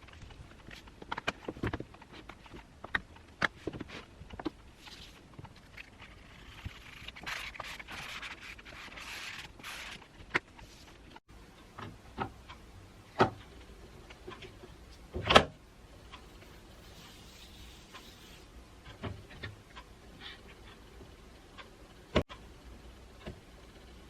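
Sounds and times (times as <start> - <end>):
rubbing and rustling: 0.0 - 11.2, 16.2 - 19.4.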